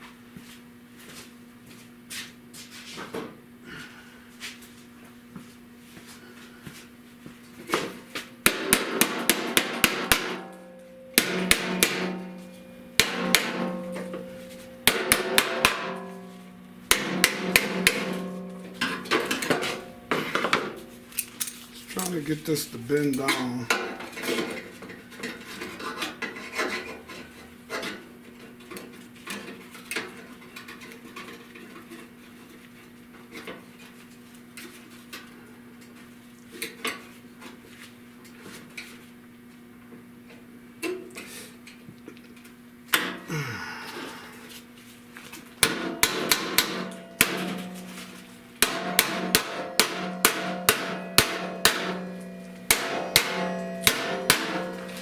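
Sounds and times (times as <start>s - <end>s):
hammer blows on sheet metal: 8.4s - 20.9s, 45.6s - 55.0s.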